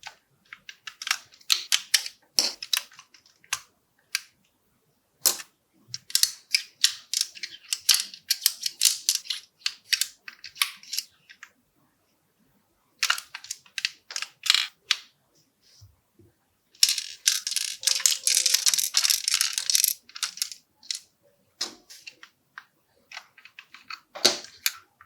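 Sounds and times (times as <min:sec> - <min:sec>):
plastic parts clicking and knocking: 0:00.0 - 0:04.3, 0:05.2 - 0:11.5, 0:13.0 - 0:15.1, 0:16.8 - 0:25.0
plastic parts rattling clatter: 0:06.0 - 0:11.1, 0:16.8 - 0:21.0.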